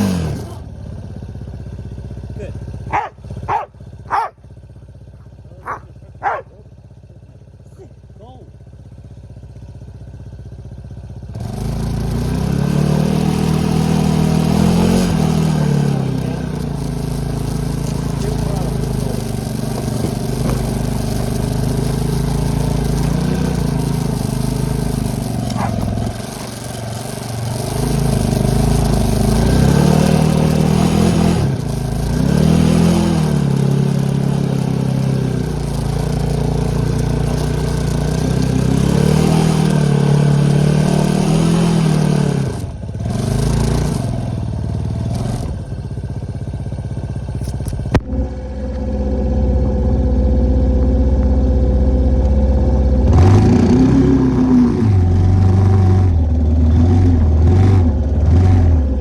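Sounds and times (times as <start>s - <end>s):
atv engine revving under load: 0.0s - 59.0s.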